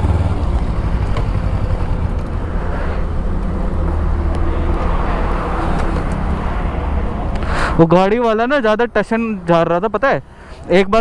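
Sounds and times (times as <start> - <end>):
motorcycle engine running: 0.0 - 4.2
road and wind noise: 0.0 - 11.0.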